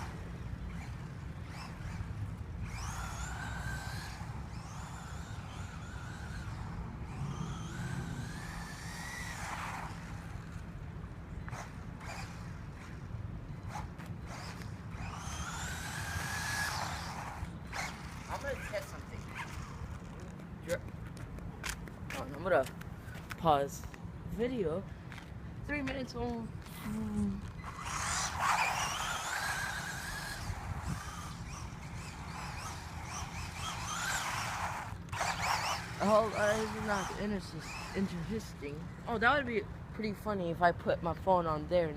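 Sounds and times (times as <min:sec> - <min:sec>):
electric motor whining: 0:00.0 - 0:20.4, 0:26.8 - 0:38.9.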